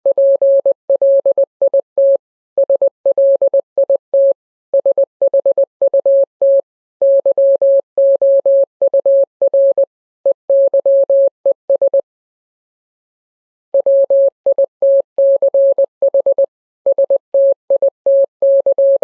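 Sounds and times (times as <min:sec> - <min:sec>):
morse code beeps: 0:00.2 - 0:01.4, 0:02.0 - 0:09.9, 0:10.5 - 0:12.0.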